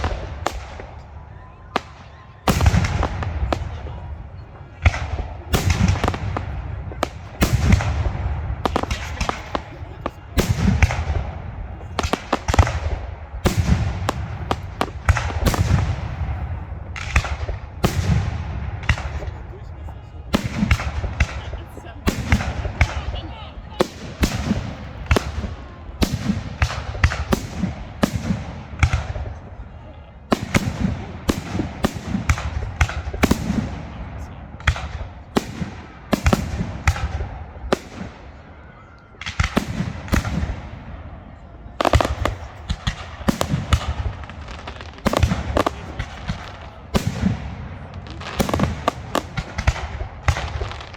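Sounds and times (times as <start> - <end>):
fireworks bangs with echoes: 0.0 - 50.9
firework shells bursting: 4.8 - 19.5, 23.8 - 29.2.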